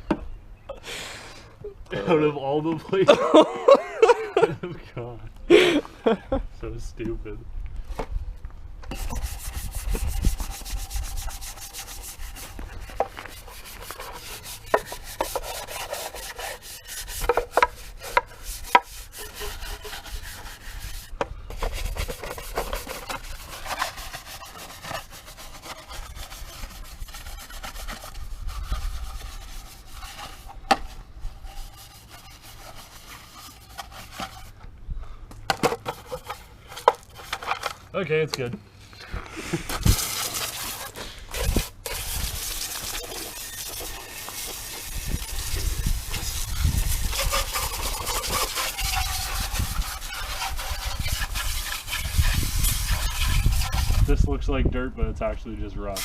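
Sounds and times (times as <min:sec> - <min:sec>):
scrubbing an engine part: 0:08.9 - 0:34.6, 0:35.6 - 0:37.9, 0:39.7 - 0:54.2.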